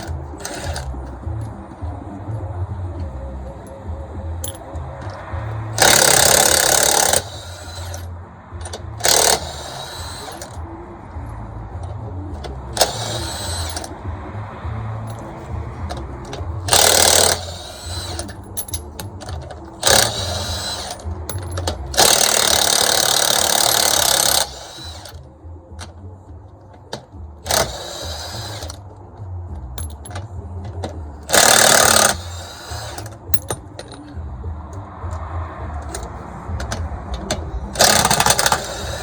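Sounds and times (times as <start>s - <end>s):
power drill spinning lug nuts: 0.0s - 1.6s, 4.4s - 10.7s, 12.4s - 14.0s, 15.1s - 25.2s, 26.8s - 28.8s, 29.7s - 34.2s, 35.8s - 39.0s
metallic clicks of socket and nuts: 5.8s - 10.6s, 15.1s - 25.2s, 29.5s - 35.2s, 35.8s - 39.0s.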